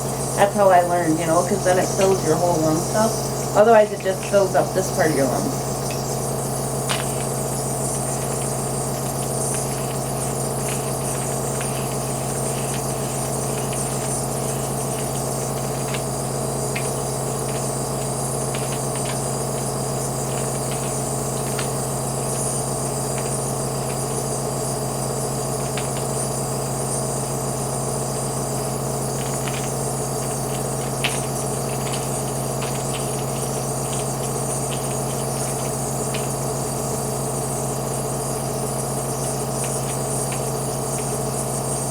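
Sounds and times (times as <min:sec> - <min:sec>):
air compressor humming: 0:00.0 - 0:41.9.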